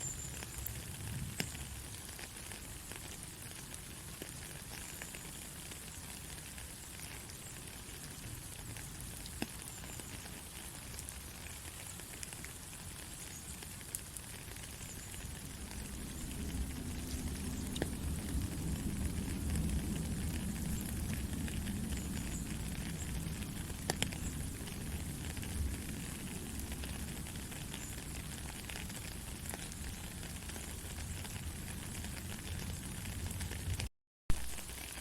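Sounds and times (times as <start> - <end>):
raindrop ticks: 0.0 - 35.0
steady rain: 0.0 - 35.0
low rumble: 15.4 - 26.0.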